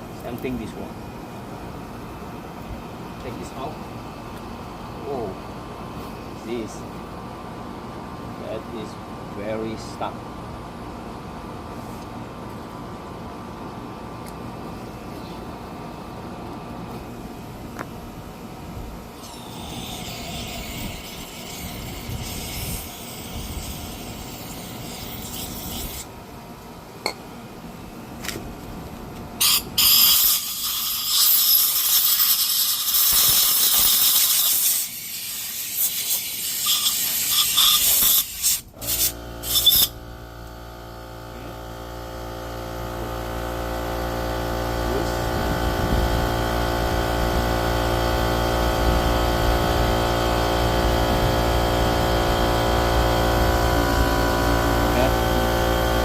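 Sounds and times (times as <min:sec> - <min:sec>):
motor humming: 0:19.0 - 0:26.1
compressed air blasts: 0:29.4 - 0:40.0.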